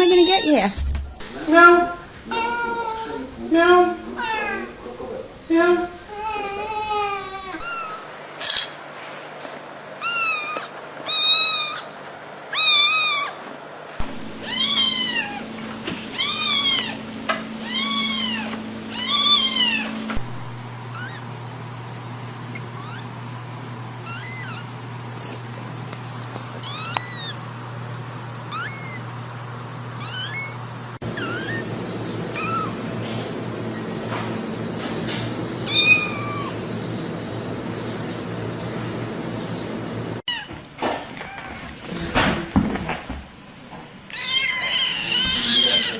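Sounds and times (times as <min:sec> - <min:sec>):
kittens meowing: 0:10.0 - 0:11.9, 0:12.5 - 0:13.4, 0:14.4 - 0:15.4, 0:16.1 - 0:17.0, 0:17.6 - 0:19.9, 0:20.5 - 0:21.4, 0:22.0 - 0:23.3, 0:24.0 - 0:25.5, 0:26.1 - 0:32.9, 0:35.6 - 0:36.6, 0:44.1 - 0:45.9.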